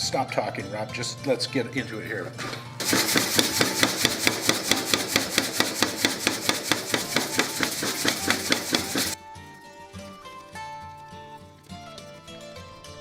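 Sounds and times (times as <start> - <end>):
plucked-string music: 0.0 - 13.0
power hammer striking hot steel: 2.4 - 9.2.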